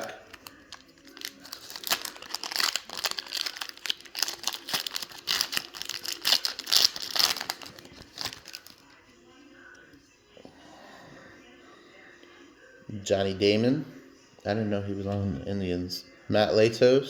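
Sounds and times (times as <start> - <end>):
plastic wrapper tearing and crinkling: 0.0 - 8.8.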